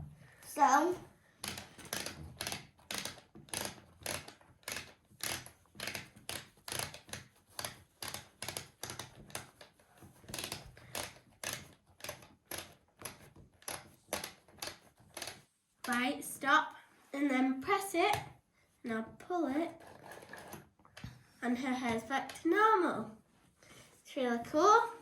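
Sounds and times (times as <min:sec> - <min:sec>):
plastic ratchet clicking: 0:01.4 - 0:16.0.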